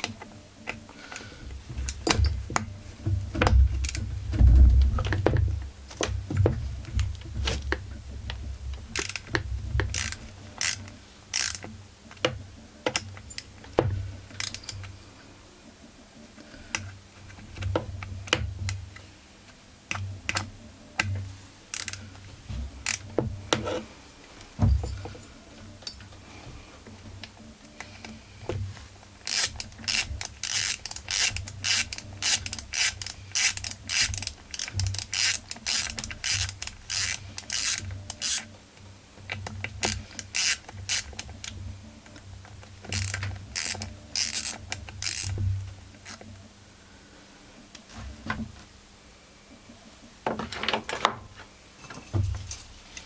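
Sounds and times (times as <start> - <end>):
ratchet wrench clicking: 9.0 - 11.7, 14.3 - 14.9, 21.7 - 22.0, 22.8 - 23.0, 29.2 - 38.5, 39.8 - 41.5, 42.9 - 45.4.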